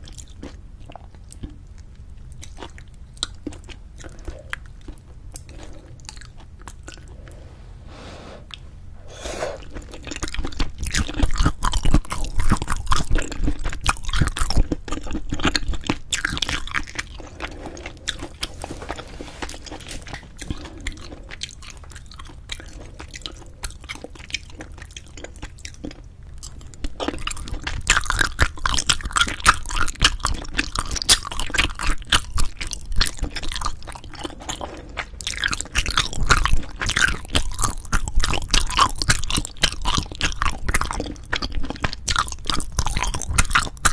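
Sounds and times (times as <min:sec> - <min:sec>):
close chewing mouth sounds: 0:00.0 - 0:07.5, 0:08.5 - 0:43.9
crunchy bites: 0:09.5 - 0:43.9.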